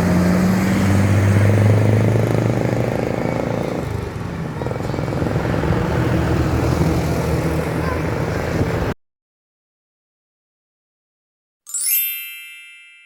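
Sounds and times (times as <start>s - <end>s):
buses passing: 0.0s - 9.0s
traffic rumble: 0.0s - 9.0s.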